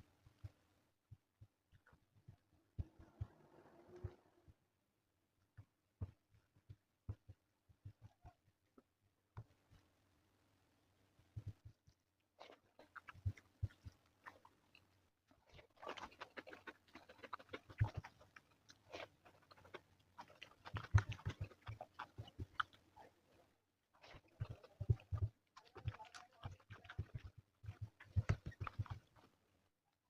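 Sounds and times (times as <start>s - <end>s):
chewing and mouth smacks: 11.4s - 23.2s, 24.0s - 29.4s
crunchy bites: 12.4s - 22.8s.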